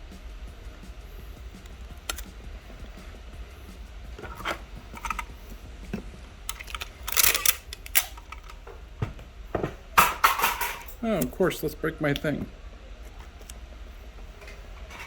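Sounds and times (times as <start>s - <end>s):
steady low hum: 0.0s - 15.0s
tape gun dispensing tape: 1.6s - 2.4s, 6.5s - 8.6s.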